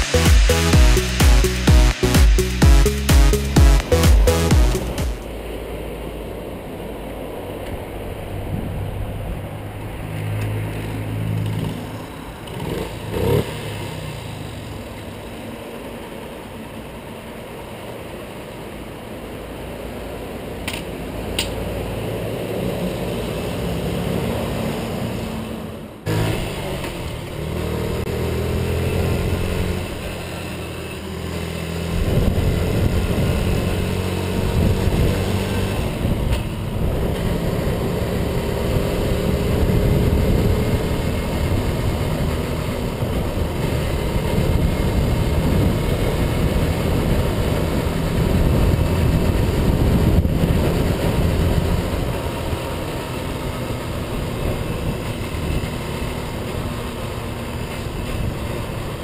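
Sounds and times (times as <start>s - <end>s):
small engine revving: 10.6s - 15.1s, 21.4s - 59.0s.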